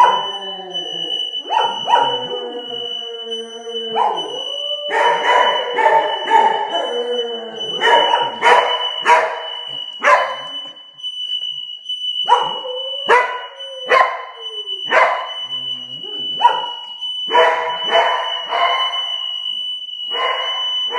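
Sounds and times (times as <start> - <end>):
dog barking: 0.0 - 0.2, 1.4 - 2.3, 4.0 - 4.2, 4.9 - 6.9, 7.8 - 10.7, 12.3 - 14.2, 14.8 - 15.5, 16.2 - 19.0, 20.1 - 20.6
smoke alarm high-pitched tone: 0.0 - 20.9.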